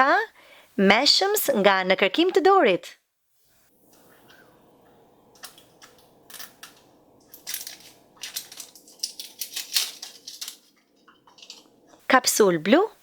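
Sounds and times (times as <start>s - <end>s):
plastic wrapper crinkling and tearing: 6.3s - 11.6s.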